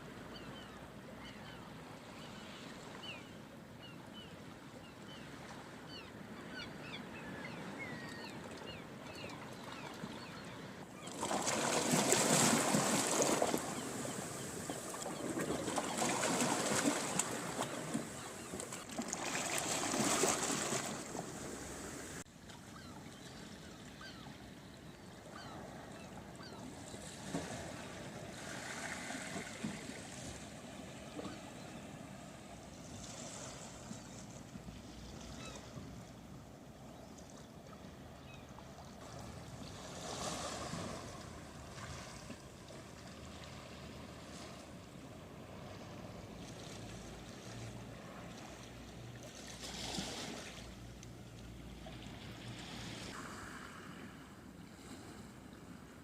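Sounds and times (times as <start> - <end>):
sea waves washing onto shore: 11.0 - 22.3.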